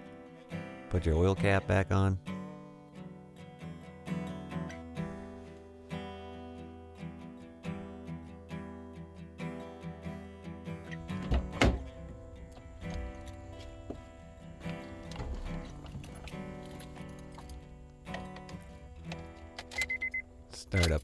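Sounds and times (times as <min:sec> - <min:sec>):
acoustic guitar music: 0:00.0 - 0:21.0
loud thump: 0:11.1 - 0:14.2.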